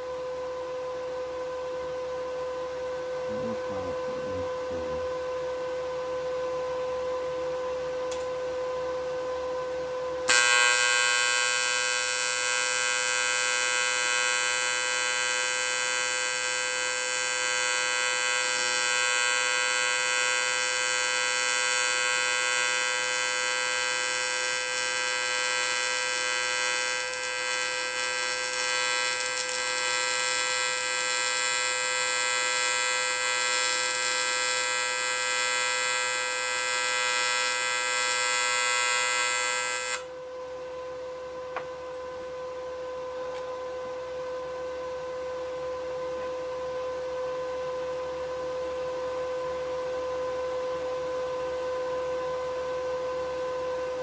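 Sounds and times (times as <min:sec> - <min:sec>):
welder humming: 0:03.3 - 0:05.1, 0:08.1 - 0:08.6, 0:10.2 - 0:40.1
welding arc buzzing: 0:10.2 - 0:40.1.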